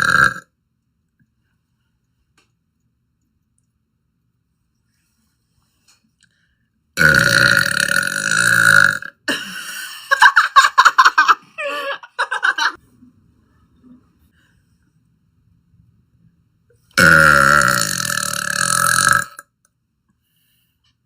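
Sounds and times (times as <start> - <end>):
woman burping loudly: 0.0 - 0.4, 7.0 - 9.6, 17.0 - 19.4.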